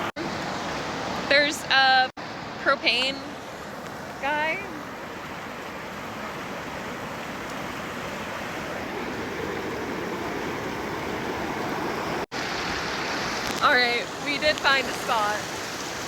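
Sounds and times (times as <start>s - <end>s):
running water rushing: 0.0s - 16.0s.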